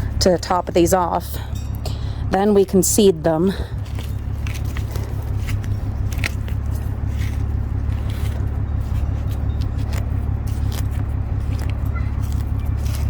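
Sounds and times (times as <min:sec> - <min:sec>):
low motor hum: 0:00.0 - 0:13.0
weeds pulled from soil: 0:03.7 - 0:13.0.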